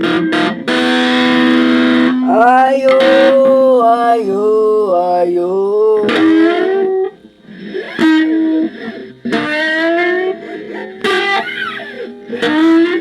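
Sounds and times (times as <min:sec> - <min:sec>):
electric guitar plucked notes: 0:00.0 - 0:13.0.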